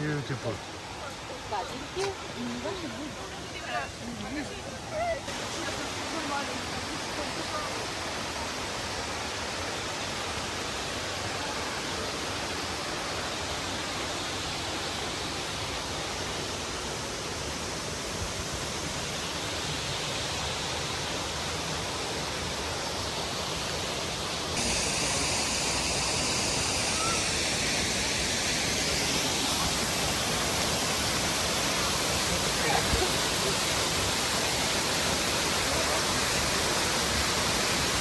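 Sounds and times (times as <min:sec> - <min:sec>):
waterfall rushing: 0:00.0 - 0:38.0.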